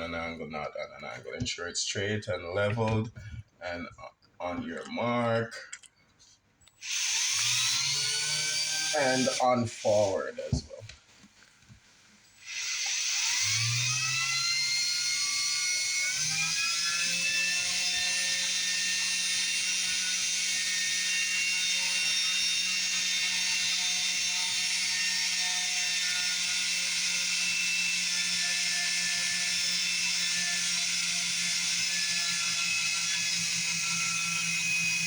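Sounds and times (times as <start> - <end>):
power drill boring through wood: 6.8 - 10.8, 12.3 - 35.0.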